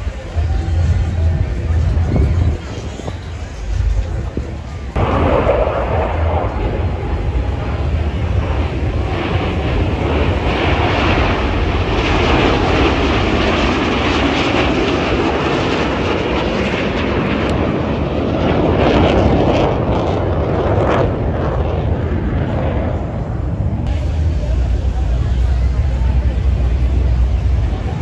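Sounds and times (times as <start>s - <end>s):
aircraft engine rumble: 0.0s - 28.0s.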